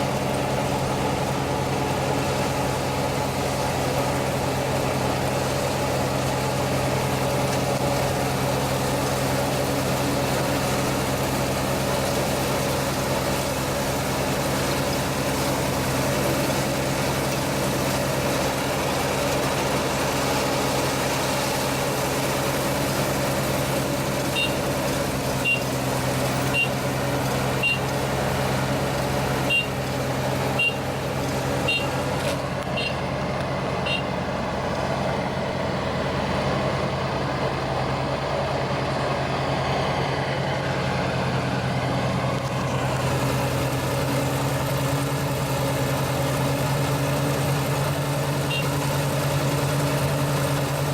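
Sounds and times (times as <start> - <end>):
harvester engine humming: 0.0 - 50.9
short high beeps: 26.4 - 26.8, 30.6 - 30.9, 32.8 - 33.0.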